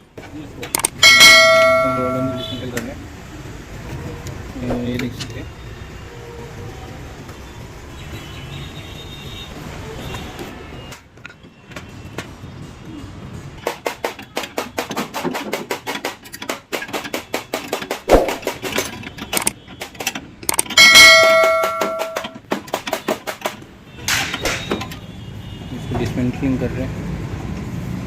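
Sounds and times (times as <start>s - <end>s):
quick metal taps and knocks: 0.6s - 2.9s, 13.6s - 25.0s
loud ringing metal clang: 0.8s - 2.7s, 20.6s - 22.4s
sharp heavy knock: 17.9s - 18.6s.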